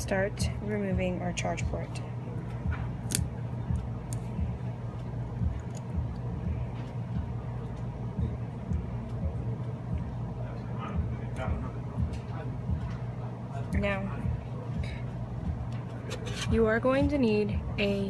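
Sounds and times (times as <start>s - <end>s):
steady low hum: 0.0s - 18.0s
metal tools clicking on phone parts: 5.6s - 5.9s.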